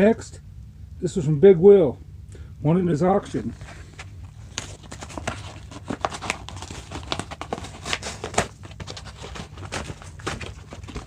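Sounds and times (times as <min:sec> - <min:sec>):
wrapping crinkling and rustling: 0:03.2 - 0:11.0.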